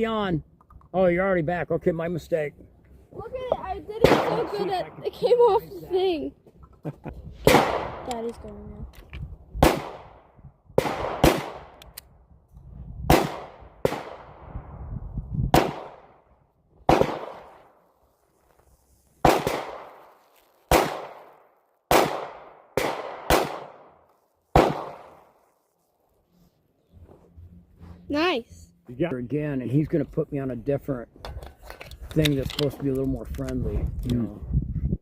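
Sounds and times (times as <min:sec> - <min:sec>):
gunshots with echo: 0:04.0 - 0:05.0, 0:07.4 - 0:08.1, 0:09.6 - 0:10.2, 0:10.8 - 0:11.8, 0:13.1 - 0:14.5, 0:15.5 - 0:16.2, 0:16.9 - 0:17.6, 0:19.2 - 0:19.9, 0:20.7 - 0:21.3, 0:21.9 - 0:23.9, 0:24.6 - 0:25.2.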